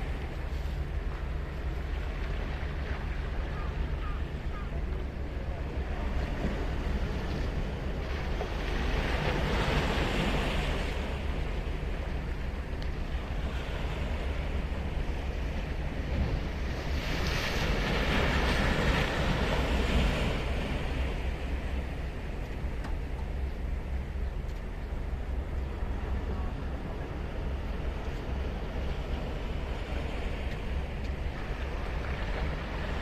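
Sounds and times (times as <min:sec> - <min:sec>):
steady low rumble: 0:00.0 - 0:33.0.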